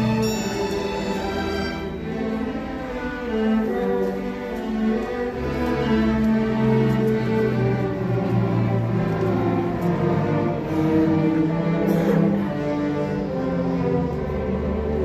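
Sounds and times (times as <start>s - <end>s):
cellos: 0.0s - 15.0s
violins sustained notes: 0.0s - 15.0s.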